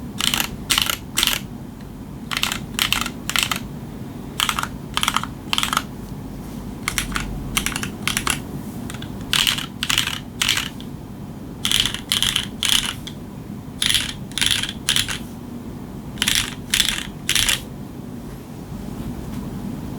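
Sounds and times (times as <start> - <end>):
mechanical keyboard keys clacking: 0.1 - 3.7, 4.4 - 5.9, 6.8 - 10.9, 11.6 - 13.2, 13.8 - 15.3, 16.2 - 17.7.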